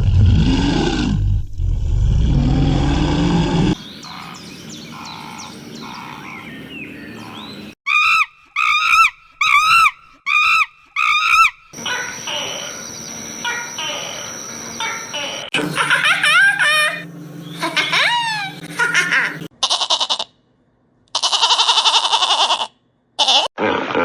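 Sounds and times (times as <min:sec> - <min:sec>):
deep animal roar: 0:00.0 - 0:04.4
faint chirps: 0:11.8 - 0:15.6.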